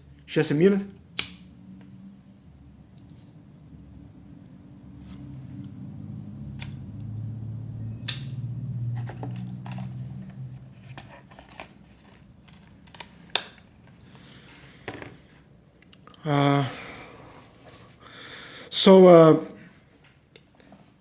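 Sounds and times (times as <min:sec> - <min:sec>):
low hum: 0:01.0 - 0:11.1, 0:16.1 - 0:18.7.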